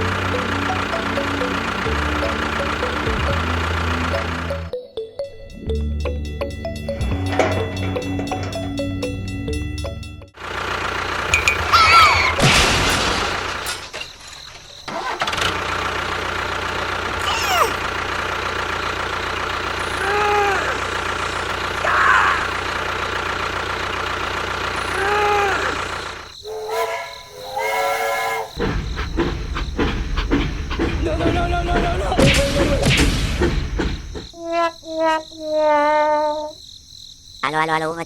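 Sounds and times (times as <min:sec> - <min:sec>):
small engine running: 0:00.0 - 0:04.7, 0:05.6 - 0:34.4
brief pitched calls and whistles: 0:26.4 - 0:28.6.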